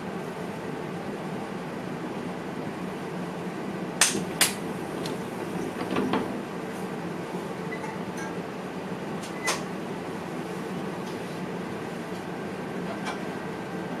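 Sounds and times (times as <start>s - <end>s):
train cab hum: 2.8s - 14.0s.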